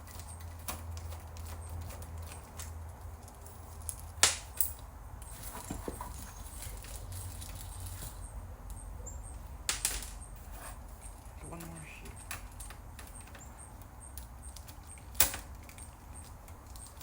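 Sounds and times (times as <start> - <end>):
clicks and knocks of parts: 0.0 - 8.8, 9.6 - 17.0.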